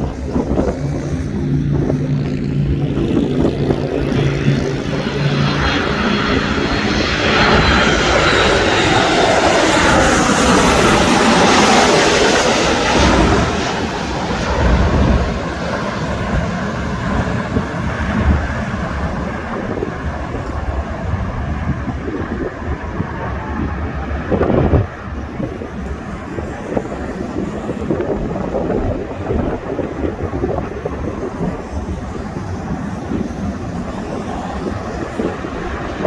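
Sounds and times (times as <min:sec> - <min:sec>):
high engine whine: 0:00.0 - 0:30.8
jet airliner passing: 0:00.0 - 0:36.0.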